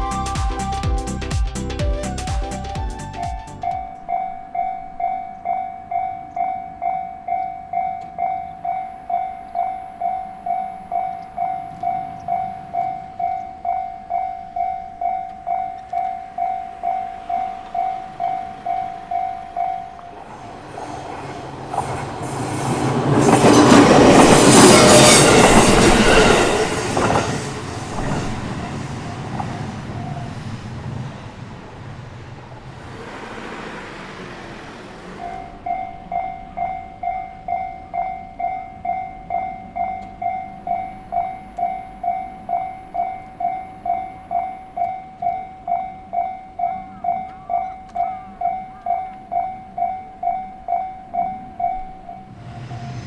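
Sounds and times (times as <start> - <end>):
train wheel and rail noise: 3.1 - 53.0
level-crossing bell dinging: 3.6 - 20.6, 35.2 - 52.7.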